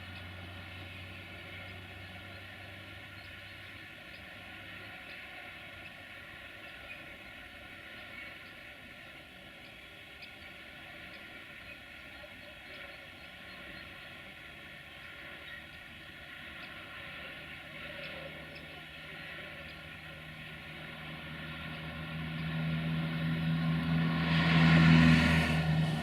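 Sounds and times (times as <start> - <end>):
locomotive electrical hum: 0.0 - 26.0
passing vehicle: 17.8 - 26.0.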